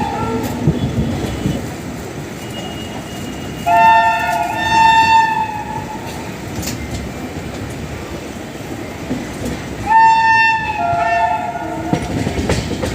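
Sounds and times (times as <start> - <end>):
train rumbling: 0.0 - 12.9
train horn blast: 2.6 - 6.2, 9.8 - 12.1.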